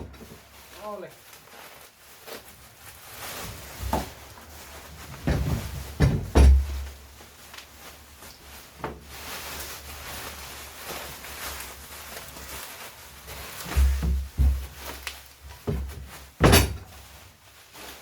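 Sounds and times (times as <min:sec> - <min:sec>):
soft rustle: 0:00.0 - 0:18.0
cardboard box thumps and knocks: 0:03.8 - 0:04.2, 0:05.2 - 0:07.0, 0:13.6 - 0:17.0.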